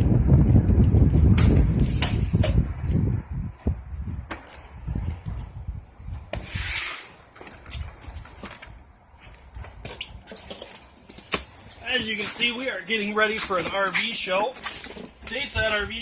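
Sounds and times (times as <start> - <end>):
low rumble of wind: 0.0 - 16.0
footsteps: 0.5 - 16.0.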